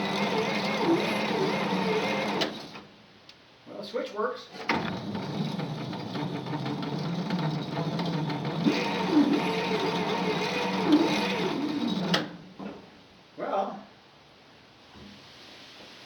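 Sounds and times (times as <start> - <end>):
starter motor cranking engine: 0.0 - 2.9, 4.5 - 12.8.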